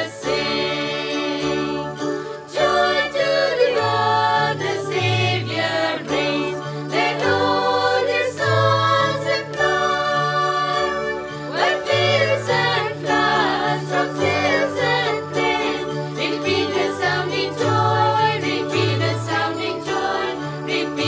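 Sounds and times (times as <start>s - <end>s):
christmas song singing: 0.0s - 21.0s
christmas song singing voices: 0.0s - 21.0s.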